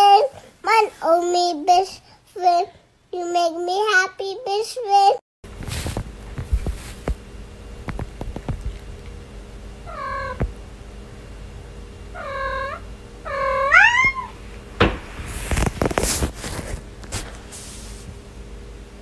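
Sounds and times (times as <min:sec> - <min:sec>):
rustling: 0:05.5 - 0:07.2, 0:14.8 - 0:18.1
cat meowing: 0:09.9 - 0:10.4, 0:12.2 - 0:14.4
knocks: 0:14.8 - 0:15.2.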